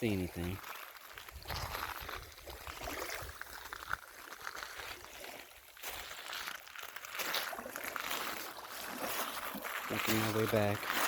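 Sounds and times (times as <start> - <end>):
wind rumbling on microphone: 1.3 - 3.4
waves washing on pebble shore: 7.2 - 11.0.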